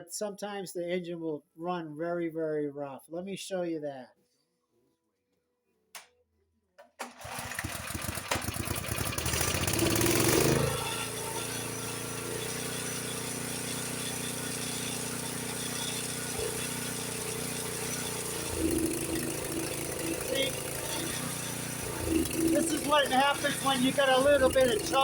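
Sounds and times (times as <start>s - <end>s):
snowblower engine running rough: 7.1s - 25.0s.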